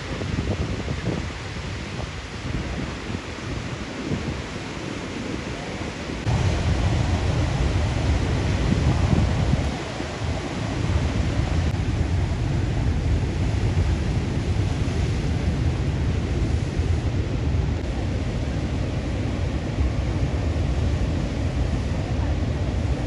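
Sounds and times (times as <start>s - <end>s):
sea surf on beach: 0.0s - 23.0s
wind buffeting microphone: 0.0s - 23.0s.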